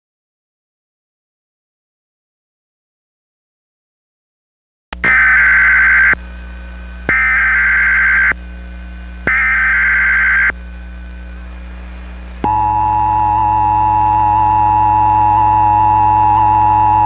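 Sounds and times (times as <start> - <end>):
buzzy data bursts: 5.0 - 11.3
two-tone alert signal: 12.5 - 17.0.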